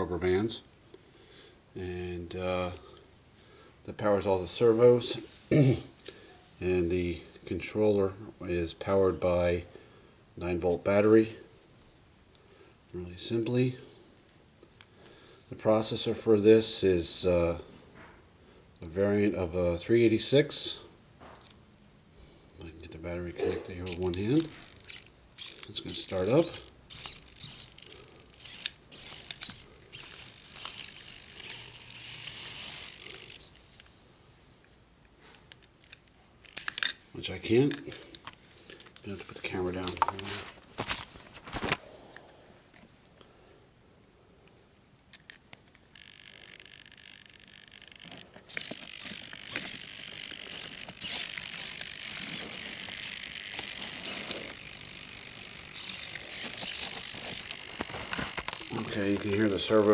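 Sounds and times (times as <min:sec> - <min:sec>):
servos whirring: 0:23.5 - 0:34.0, 0:45.9 - 0:59.9.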